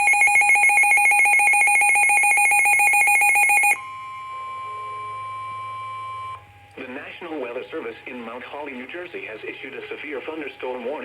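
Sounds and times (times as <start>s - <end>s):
rapid two-tone beeping: 0.0s - 3.8s.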